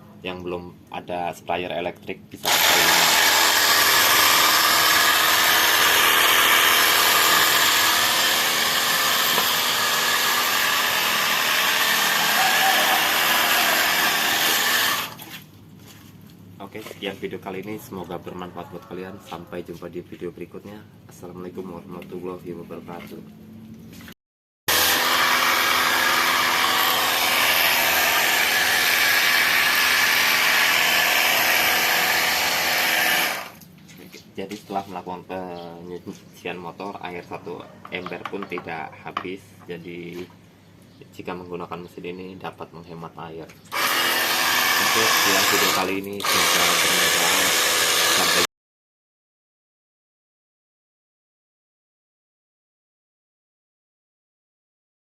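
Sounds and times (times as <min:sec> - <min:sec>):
electric pump motor whine: 0:02.4 - 0:15.2, 0:24.7 - 0:33.6, 0:43.7 - 0:48.5.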